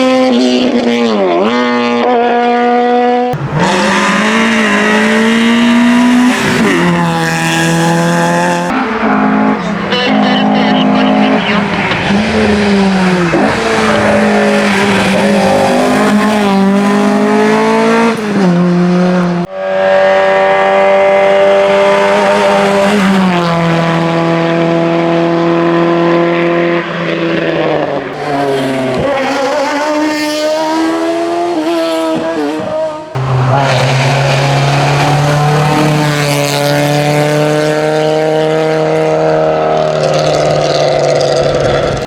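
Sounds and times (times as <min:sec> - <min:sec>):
race car engines revving: 0:00.0 - 0:42.0.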